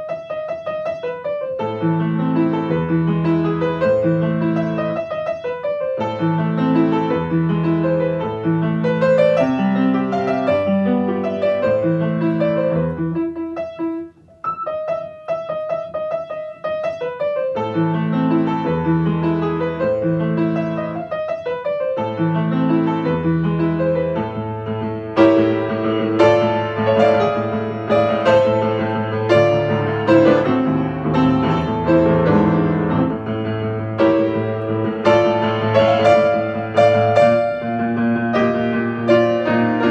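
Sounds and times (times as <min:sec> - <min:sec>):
piano music: 0:00.0 - 0:39.9.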